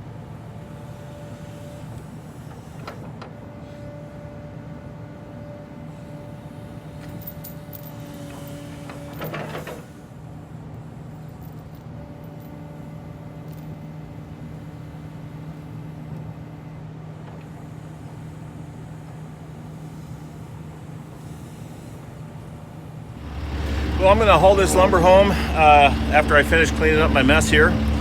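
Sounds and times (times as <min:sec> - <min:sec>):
engine idling: 0:23.2 - 0:28.0.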